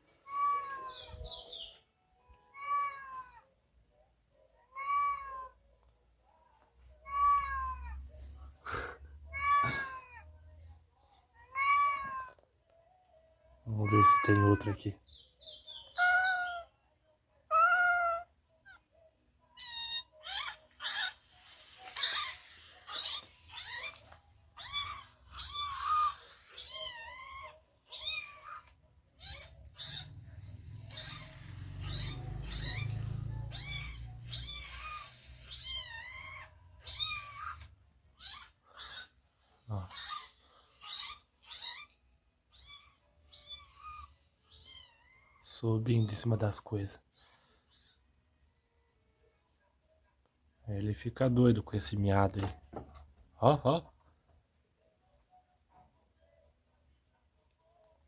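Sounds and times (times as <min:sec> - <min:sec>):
cat meows through phone speaker: 0:00.3 - 0:01.1, 0:02.4 - 0:03.4, 0:04.6 - 0:05.6, 0:07.0 - 0:08.1, 0:09.3 - 0:10.4, 0:11.4 - 0:12.4, 0:13.8 - 0:14.8, 0:17.5 - 0:18.3, 0:19.6 - 0:21.2
recorded cat meows through phone: 0:04.6 - 0:05.6, 0:07.0 - 0:08.2, 0:09.3 - 0:10.5, 0:11.4 - 0:12.4, 0:13.8 - 0:14.8, 0:15.9 - 0:16.7, 0:17.5 - 0:18.8, 0:19.6 - 0:39.0.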